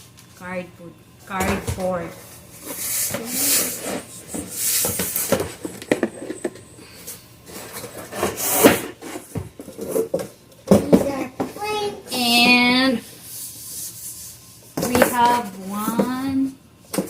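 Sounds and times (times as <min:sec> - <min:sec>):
cardboard and wood rubbing: 0:02.6 - 0:05.7.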